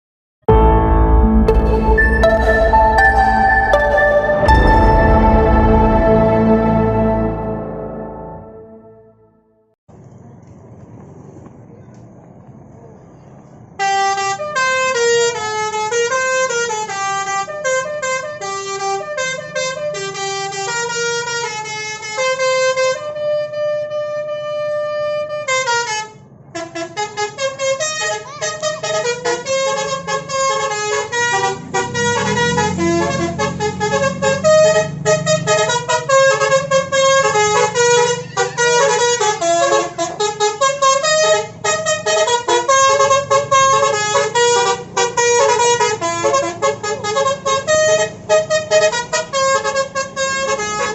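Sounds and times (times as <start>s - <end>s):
low rumble: 0.5s - 9.0s
multi-tone bus horn tune: 0.5s - 9.6s, 13.8s - 50.9s.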